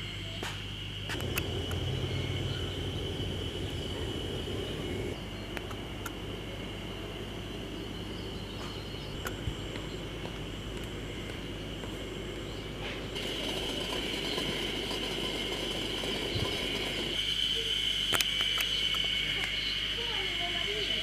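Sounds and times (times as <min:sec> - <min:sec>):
insects trilling: 0:00.0 - 0:21.0
low rumble: 0:01.2 - 0:06.4.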